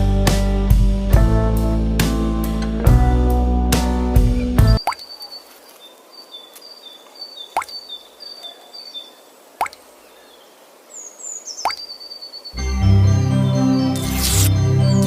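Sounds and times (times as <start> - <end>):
faint high chirping: 4.6 - 12.6.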